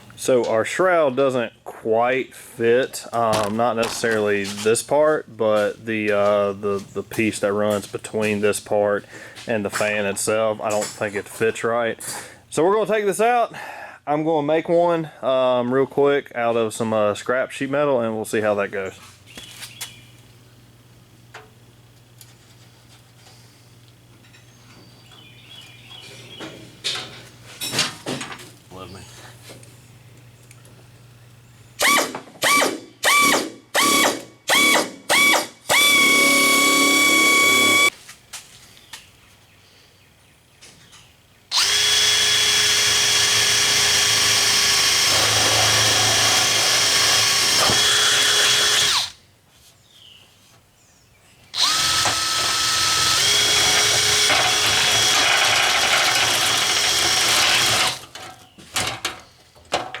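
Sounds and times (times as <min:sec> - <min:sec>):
power tool cutting sheet metal: 0:31.8 - 0:37.9, 0:41.5 - 0:49.1, 0:51.6 - 0:58.0.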